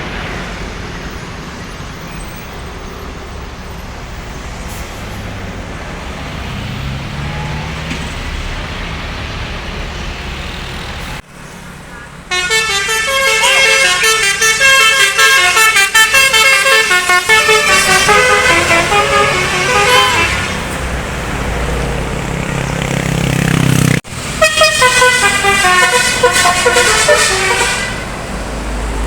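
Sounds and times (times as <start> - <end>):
bus engine rumble: 0.0 - 29.0
multi-tone bus horn melody: 7.1 - 8.0, 12.3 - 22.3, 24.2 - 28.4.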